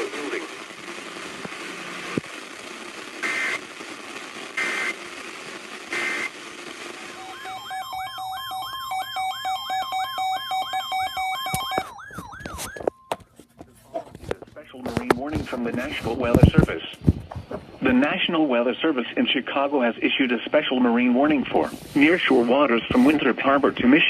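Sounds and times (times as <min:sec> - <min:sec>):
radio static: 0:00.0 - 0:24.0
radio alarms with warbling siren tone: 0:07.1 - 0:13.2.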